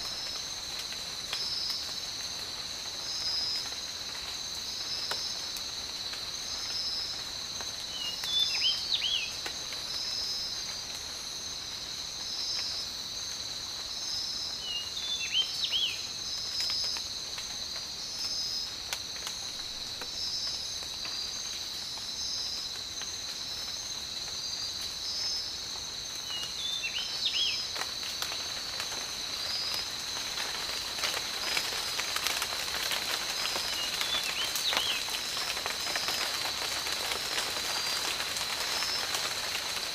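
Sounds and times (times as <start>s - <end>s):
insects droning: 0.0s - 39.9s
rain pattering: 0.0s - 39.9s
pulsing insect call: 13.9s - 39.9s.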